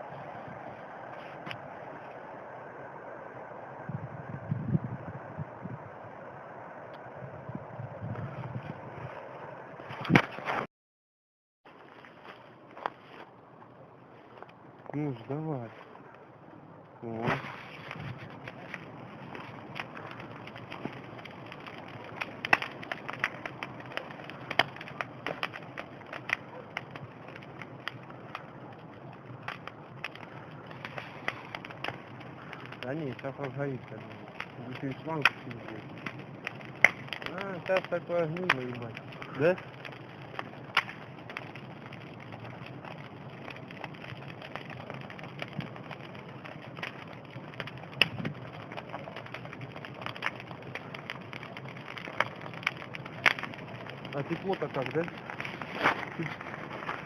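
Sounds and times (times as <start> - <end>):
low fire hiss: 0.0 - 10.6, 11.7 - 57.0
campfire crackling and popping: 0.0 - 10.7, 11.7 - 57.0.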